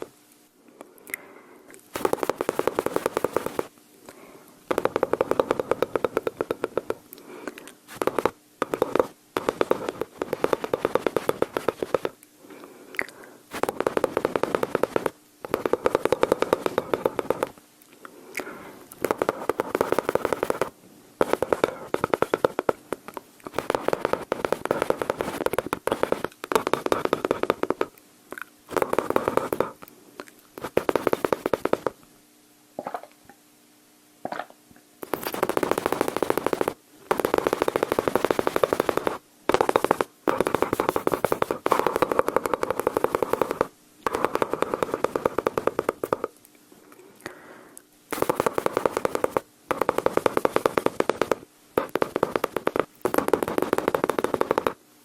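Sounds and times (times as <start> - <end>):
mouth imitating gunfire: 2.0 - 3.7, 4.7 - 7.0, 7.9 - 12.2, 13.5 - 17.6, 19.0 - 27.9, 28.7 - 29.8, 30.6 - 32.0, 35.0 - 46.3, 48.1 - 54.8.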